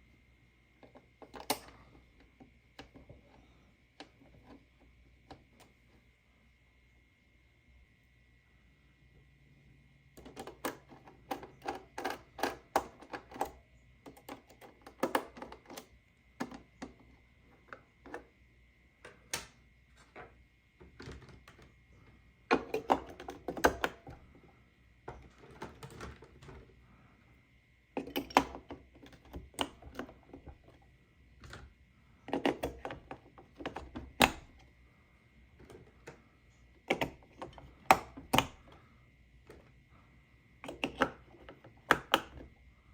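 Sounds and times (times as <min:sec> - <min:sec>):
faint high whine: 0:00.0 - 0:10.3
plastic toy clicks and knocks: 0:10.2 - 0:17.0, 0:22.5 - 0:24.2, 0:36.8 - 0:38.6, 0:40.6 - 0:42.5.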